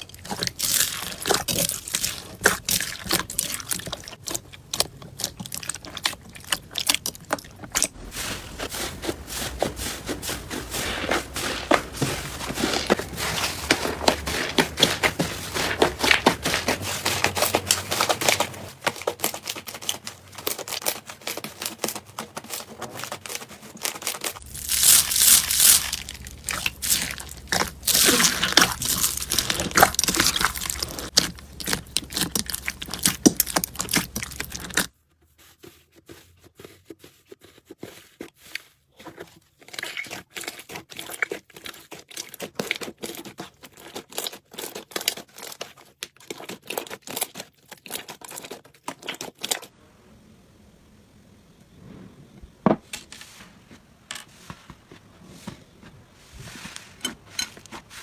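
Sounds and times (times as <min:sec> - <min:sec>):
slime squished by hand: 0:24.3 - 0:34.9.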